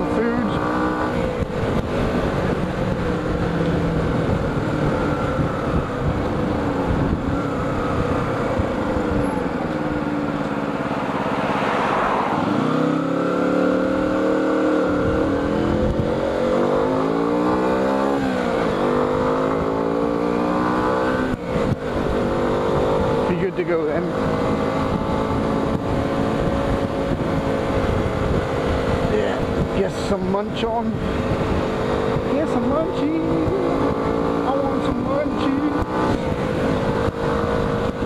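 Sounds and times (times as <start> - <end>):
motorcycle engine: 0.0 - 38.0
tyres on wet road: 0.0 - 38.0
wind rushing: 0.4 - 23.3, 24.1 - 30.2.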